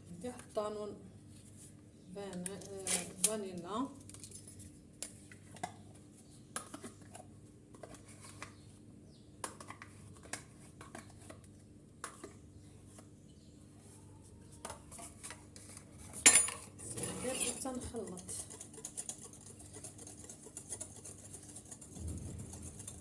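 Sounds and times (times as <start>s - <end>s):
utensils clinking against bowl: 14.7s - 23.0s.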